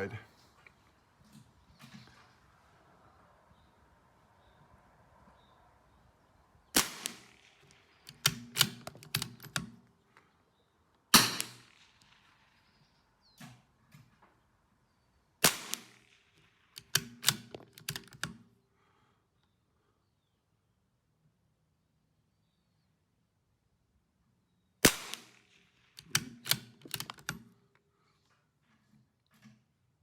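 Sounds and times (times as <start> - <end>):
rifle shots: 6.8 - 9.8, 11.1 - 12.3, 15.4 - 18.4, 24.8 - 27.4
rifle bolt metallic clicks: 6.8 - 9.9, 16.8 - 18.4, 26.0 - 27.6.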